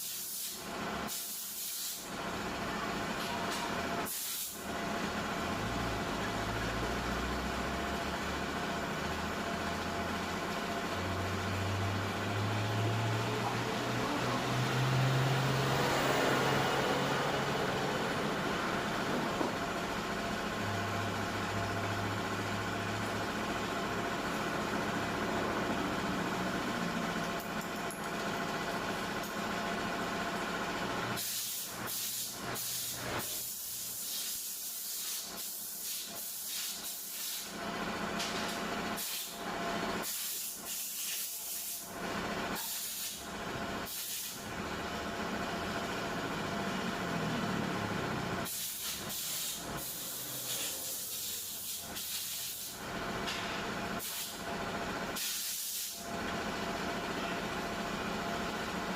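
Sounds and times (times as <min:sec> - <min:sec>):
air blow gun hissing: 0:00.0 - 0:02.1, 0:04.0 - 0:04.6, 0:31.2 - 0:37.5, 0:40.0 - 0:41.8, 0:43.8 - 0:44.4, 0:48.4 - 0:52.8, 0:54.0 - 0:54.4, 0:55.2 - 0:56.0.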